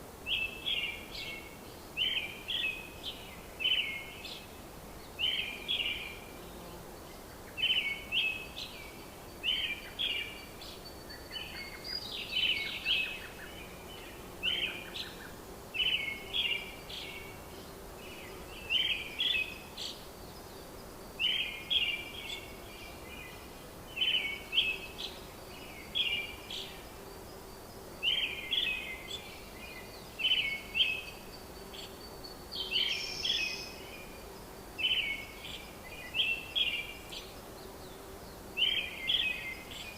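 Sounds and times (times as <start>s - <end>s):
steady background hiss: 0.0s - 39.9s
bird chirping: 5.1s - 26.9s, 27.5s - 34.2s.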